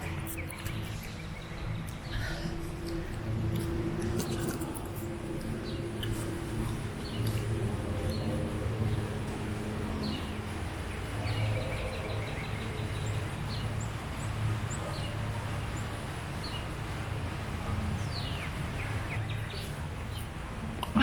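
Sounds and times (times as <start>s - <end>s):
low outdoor rumble: 0.0s - 21.0s
birds chirping: 5.4s - 21.0s.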